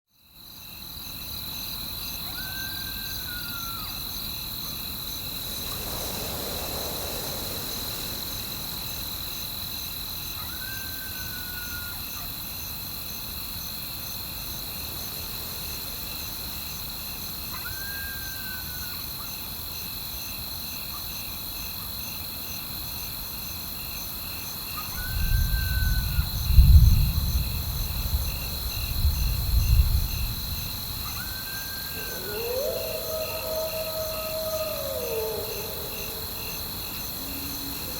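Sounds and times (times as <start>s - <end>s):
crickets trilling: 0.2s - 37.9s
thunder rumbling: 25.0s - 31.2s.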